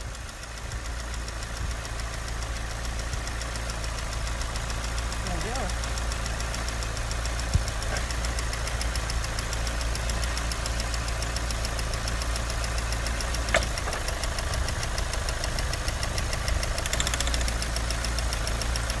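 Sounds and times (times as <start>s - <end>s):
engine idling with a knock: 5.4s - 19.0s
sharp click: 16.8s - 17.6s.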